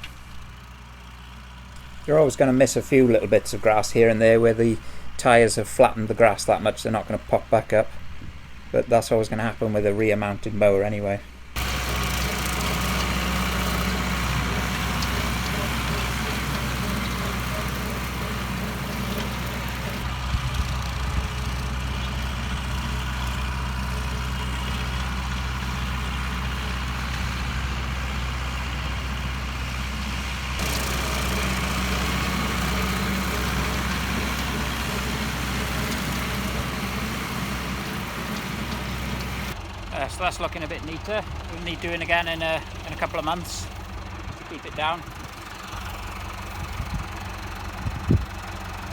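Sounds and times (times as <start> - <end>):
tractor diesel engine running: 0.0 - 48.9
topper cutting grass: 11.6 - 48.5.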